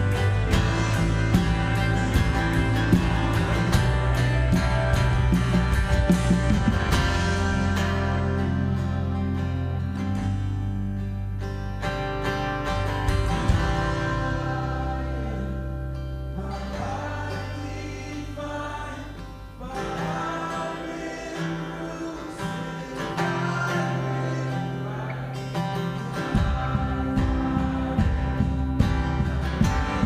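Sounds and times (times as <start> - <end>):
bass notes: 0.0 - 18.7, 26.2 - 30.0
acoustic guitar: 0.0 - 30.0.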